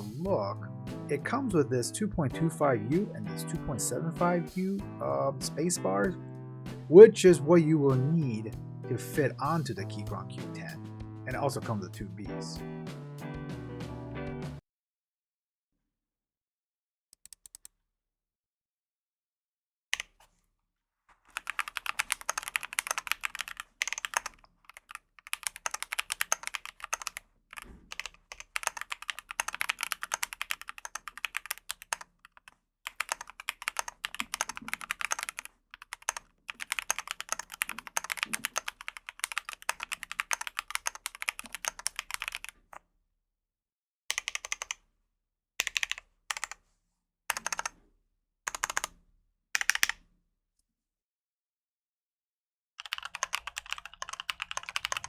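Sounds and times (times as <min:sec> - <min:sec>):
mechanical keyboard typing: 0:21.3 - 0:42.8, 0:44.1 - 0:44.8, 0:45.6 - 0:46.6, 0:47.3 - 0:47.8, 0:48.5 - 0:49.0, 0:49.6 - 0:50.0, 0:52.8 - 0:55.0.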